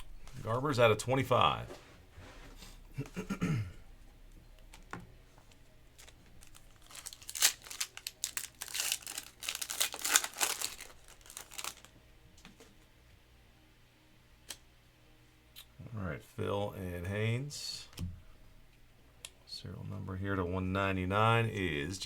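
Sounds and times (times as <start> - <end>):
wrapper torn and crinkled: 6.0 - 12.0.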